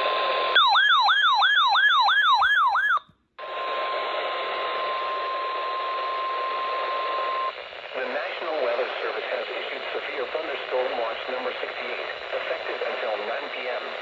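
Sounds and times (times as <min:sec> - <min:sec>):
fast-warbling electronic siren: 0:00.6 - 0:03.0
steady alarm tone: 0:00.6 - 0:03.0
radio static: 0:03.4 - 0:14.0.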